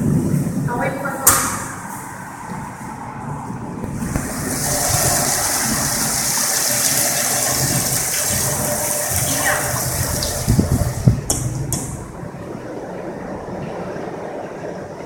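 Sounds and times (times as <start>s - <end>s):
water gushing and splashing: 3.8s - 13.6s.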